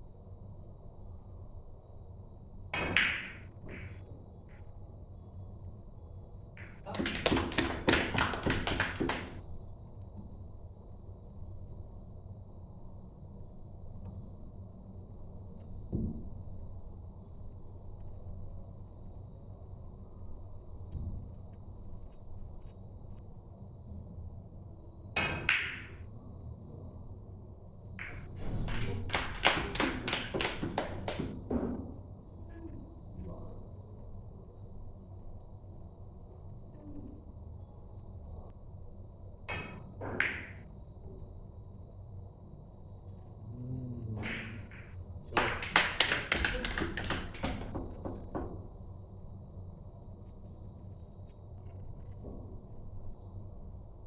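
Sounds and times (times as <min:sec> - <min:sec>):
billiard balls clicking together: 0:06.6 - 0:09.4, 0:28.0 - 0:31.4, 0:44.3 - 0:48.4
hand clapping: 0:06.6 - 0:09.4, 0:28.0 - 0:31.4, 0:45.4 - 0:47.8.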